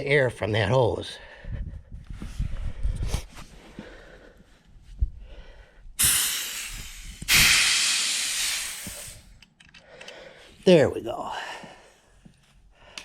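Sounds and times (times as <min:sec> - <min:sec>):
high-pressure air hissing: 0:06.0 - 0:09.4.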